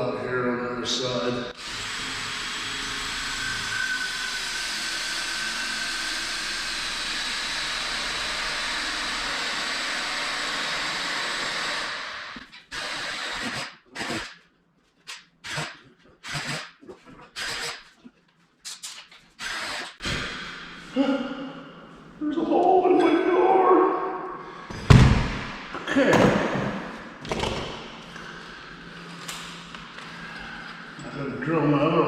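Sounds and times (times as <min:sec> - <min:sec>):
power drill with hole saw cutting: 0:01.6 - 0:14.4, 0:15.4 - 0:17.9, 0:19.4 - 0:20.9
short knocks and handling sounds: 0:26.1 - 0:27.8.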